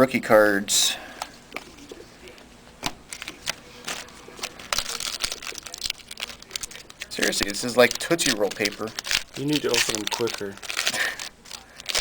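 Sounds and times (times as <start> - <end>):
card pack wrappers crinkling: 3.0 - 12.0.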